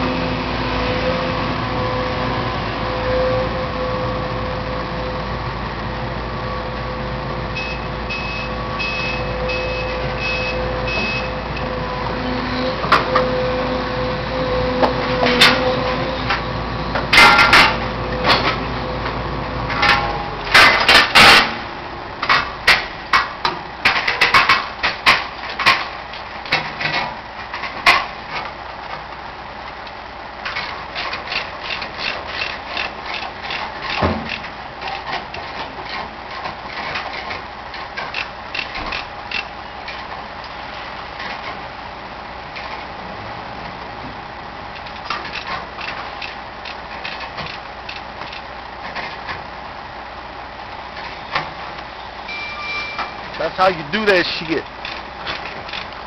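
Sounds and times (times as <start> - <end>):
debris knocks and clanks: 17.0 - 18.6, 19.7 - 21.6, 22.2 - 28.6.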